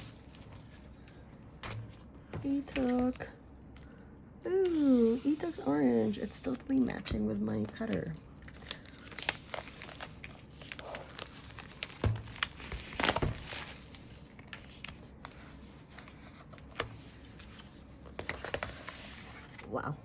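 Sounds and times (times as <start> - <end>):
packaging crinkling and rustling: 7.6 - 19.7.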